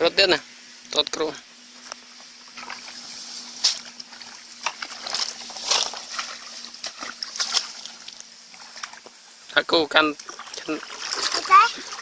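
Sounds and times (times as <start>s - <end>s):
water sloshing and splashing: 2.5s - 9.2s, 10.0s - 12.0s.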